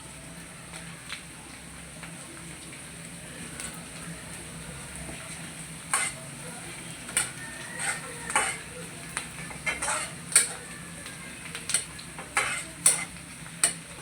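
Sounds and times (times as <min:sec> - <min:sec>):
spices sizzling in hot oil: 0:00.0 - 0:14.0
utensil scraping a pan: 0:05.9 - 0:06.2, 0:07.1 - 0:08.8, 0:09.4 - 0:10.7, 0:11.7 - 0:13.8.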